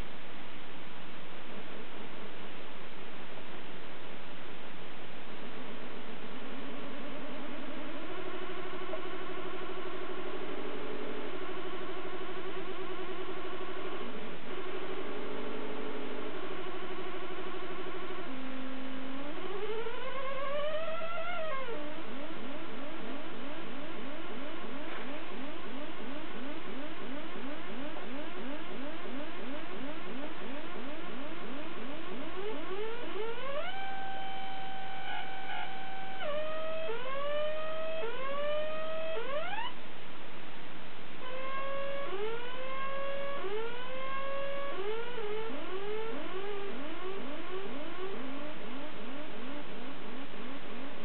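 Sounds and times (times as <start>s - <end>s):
steady electronic tone: 6.4s - 39.8s, 41.1s - 51.0s
electronic rising chirps: 6.6s - 39.8s, 41.2s - 51.0s
electronic rising whoops: 18.3s - 39.7s, 41.2s - 49.7s.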